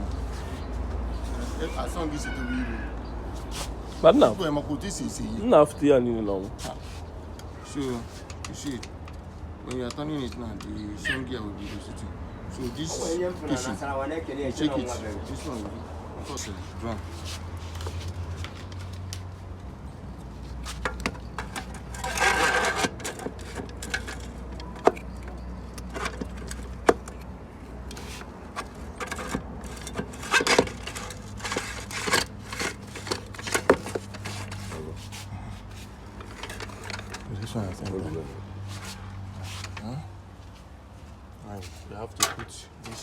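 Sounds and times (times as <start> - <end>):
metal scraping: 20.7 - 27.2, 27.9 - 39.8
metal parts clinking and knocking: 20.8 - 27.3, 27.9 - 34.8, 36.1 - 37.9.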